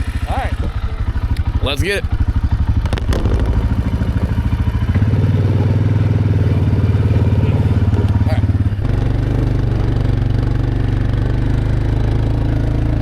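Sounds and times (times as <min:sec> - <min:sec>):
small vehicle engine running: 0:00.0 - 0:13.0.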